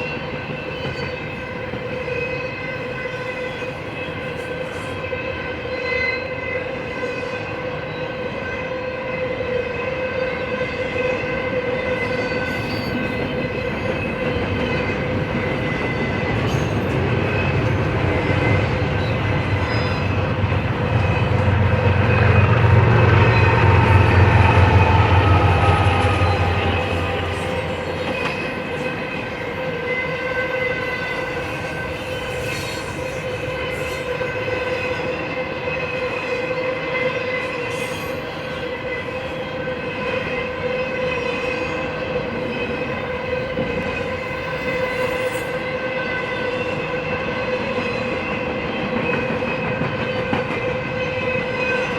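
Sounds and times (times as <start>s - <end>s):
diesel locomotive rumble: 15.0s - 29.8s
high-pitched wheel squeal: 18.2s - 29.8s.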